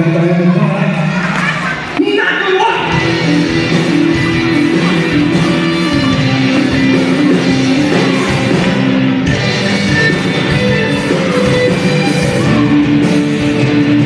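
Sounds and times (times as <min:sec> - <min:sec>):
guitar: 0:00.0 - 0:14.0
live band playing slow ballad: 0:02.9 - 0:14.0.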